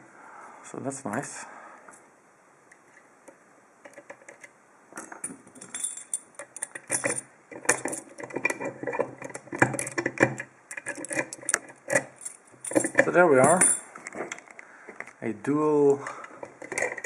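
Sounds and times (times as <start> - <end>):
metal lock clinking and rattling: 3.9 - 15.1, 16.4 - 17.0.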